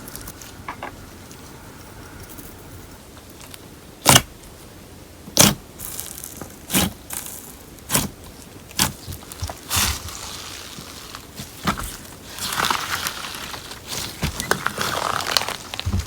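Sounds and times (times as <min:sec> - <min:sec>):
slime crackling when squeezed: 0:09.6 - 0:15.9.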